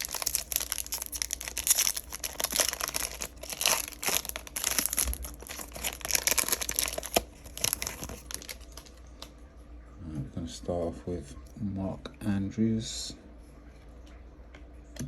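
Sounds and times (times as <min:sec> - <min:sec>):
foil wrapper tearing and crinkling: 0:00.0 - 0:09.0.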